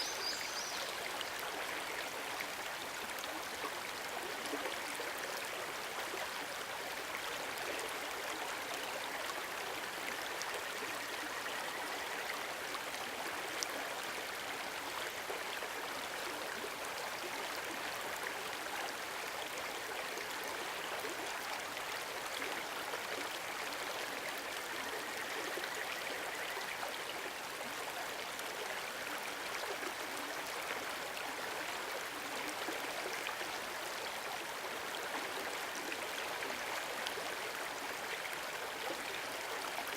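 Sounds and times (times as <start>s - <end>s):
stream rushing over rocks: 0.0s - 10.6s.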